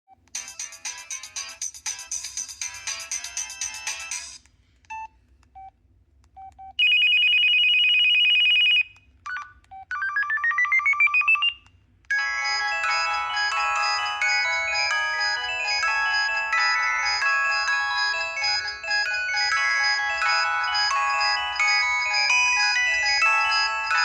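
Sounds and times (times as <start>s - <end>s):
ringtone melody: 0.4s - 4.4s, 8.2s - 11.5s, 12.1s - 24.0s
two-tone electronic ring: 6.8s - 24.0s.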